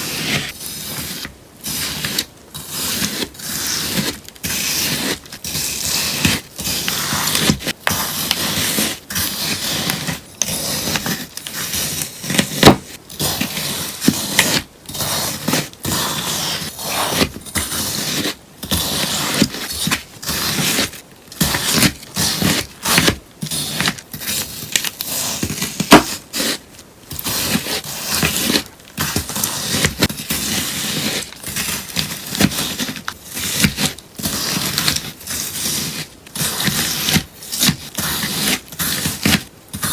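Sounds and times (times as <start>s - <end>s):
sponge being cut: 0.0s - 39.9s.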